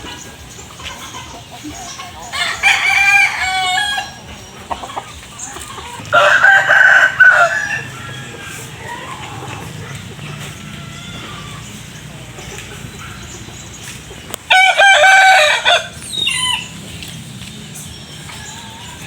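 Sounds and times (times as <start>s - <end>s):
hens clucking: 0.0s - 19.0s
rooster crowing: 2.3s - 4.2s, 6.0s - 12.0s, 14.5s - 16.7s.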